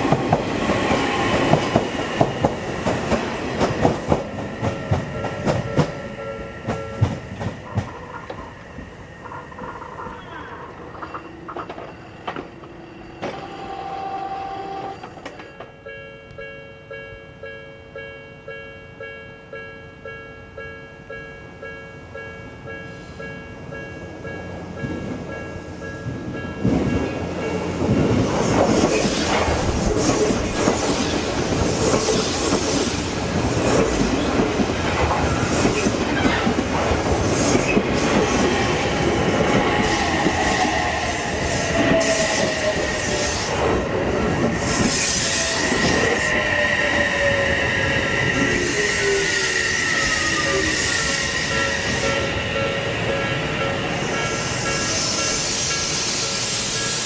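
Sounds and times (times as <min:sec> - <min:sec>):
train wheels clattering: 0:00.0 - 0:13.5, 0:26.1 - 0:47.6
level-crossing warning bell: 0:00.0 - 0:28.2, 0:37.6 - 0:57.0
train motor whine: 0:09.5 - 0:15.6.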